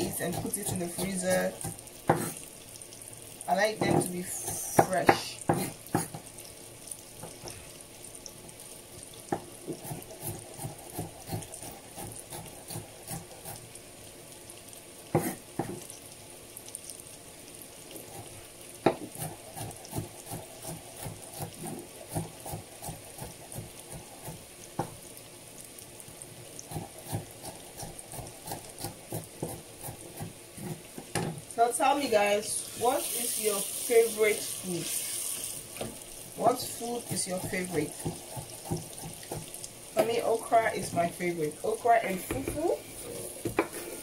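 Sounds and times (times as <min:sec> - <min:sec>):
vegetables sizzling in oil: 0:00.0 - 0:44.0
spoon scraping pan: 0:42.2 - 0:44.0.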